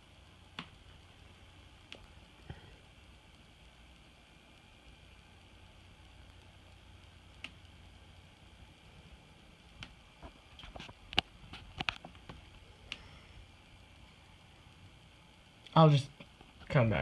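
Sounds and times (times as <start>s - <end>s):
light clicks and taps: 9.8s - 13.1s.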